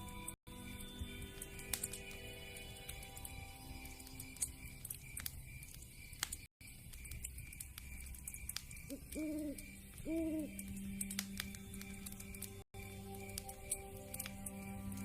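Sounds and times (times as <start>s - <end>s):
wood fire crackling and popping: 0.2s - 15.0s
owl hooting: 8.9s - 10.7s.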